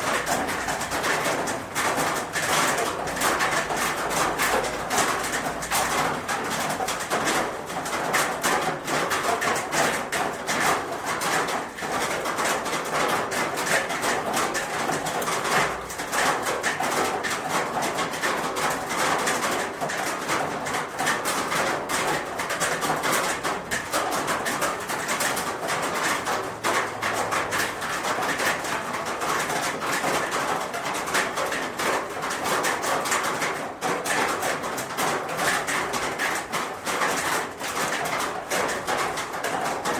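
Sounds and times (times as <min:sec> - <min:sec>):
rain on a roof: 0:00.0 - 0:39.9.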